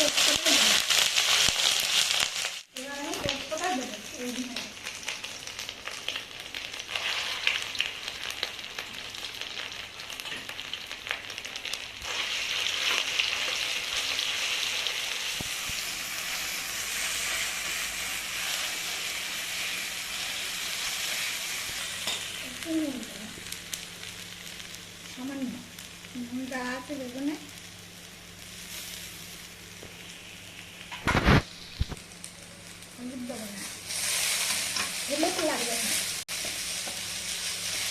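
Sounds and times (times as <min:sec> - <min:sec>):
seeds frying in hot oil: 0:00.0 - 0:37.9.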